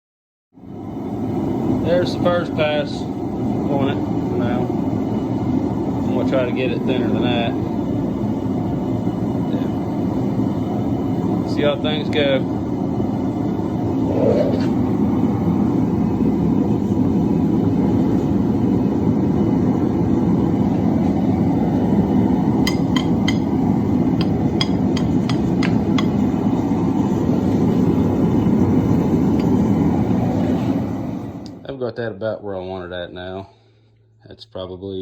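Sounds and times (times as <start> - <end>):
loud steady machine rumbling: 0.6 - 32.0
hammer blows on hot steel: 21.7 - 29.9.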